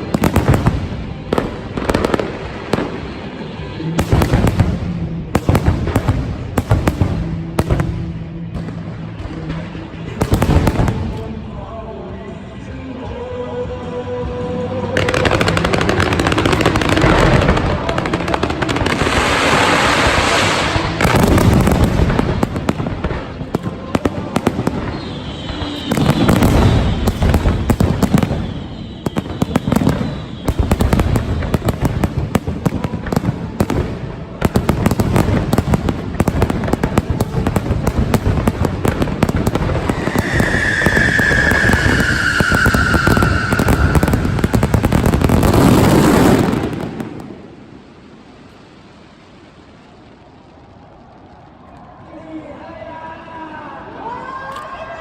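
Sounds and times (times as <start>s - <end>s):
whistling firework: 0.0s - 11.4s, 15.0s - 48.1s
fireworks crackling: 0.0s - 13.2s, 14.3s - 55.0s
firework shells booming: 20.8s - 47.7s.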